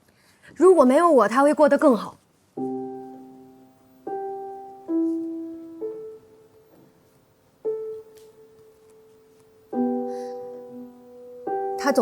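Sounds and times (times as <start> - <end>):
slow sparse piano notes: 2.6 - 12.0.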